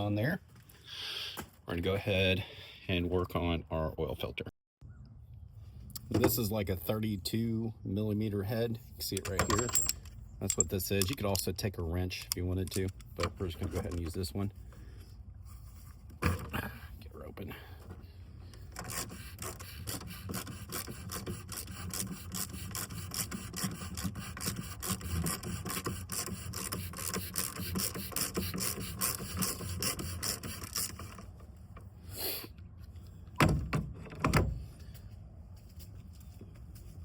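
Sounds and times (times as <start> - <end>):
ratchet clicking: 18.7 - 31.2.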